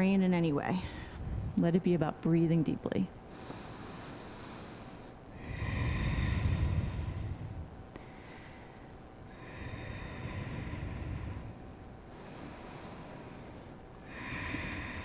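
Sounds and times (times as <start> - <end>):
person breathing deeply: 3.3 - 15.0.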